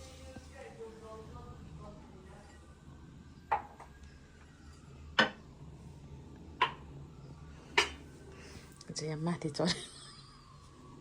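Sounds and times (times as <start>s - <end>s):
low room hum: 0.0s - 11.0s
hard objects knocking: 5.2s - 5.4s.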